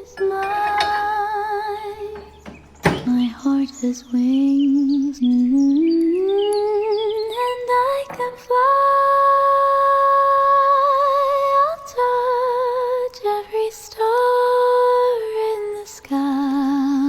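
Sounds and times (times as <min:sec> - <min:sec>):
woman singing wordless lullaby: 0:00.0 - 0:17.0.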